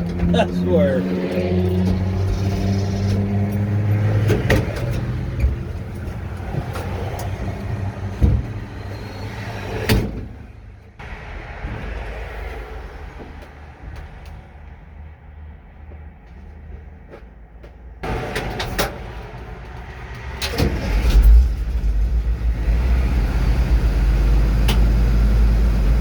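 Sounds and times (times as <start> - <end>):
vehicle engine hum: 0.0 - 26.0
vehicle knocks and rattles: 1.4 - 9.1.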